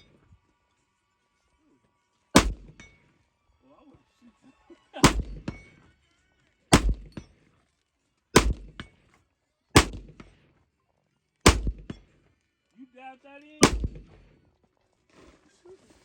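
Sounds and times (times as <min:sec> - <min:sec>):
rifle shots: 0:02.4 - 0:02.8, 0:05.0 - 0:05.6, 0:06.7 - 0:07.2, 0:08.4 - 0:08.9, 0:09.8 - 0:10.3, 0:11.5 - 0:12.0, 0:13.6 - 0:14.3
bullet clanging on steel target: 0:02.4 - 0:03.1, 0:05.0 - 0:05.8, 0:06.7 - 0:07.6, 0:08.4 - 0:09.2, 0:09.8 - 0:10.6, 0:11.5 - 0:12.3.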